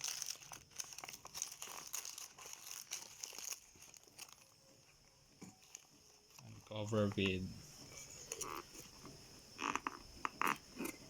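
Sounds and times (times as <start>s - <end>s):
leaf rustling and crinkling: 0.0s - 4.6s.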